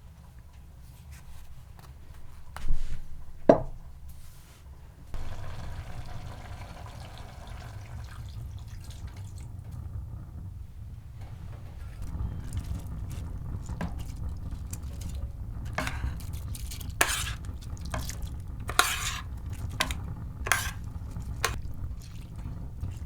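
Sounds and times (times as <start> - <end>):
water pouring into container: 5.2 - 9.6, 12.0 - 23.0.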